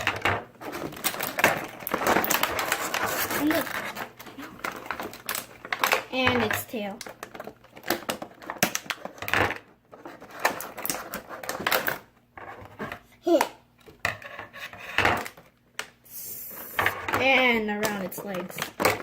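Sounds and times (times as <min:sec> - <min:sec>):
packaging rustling: 0:00.0 - 0:06.1.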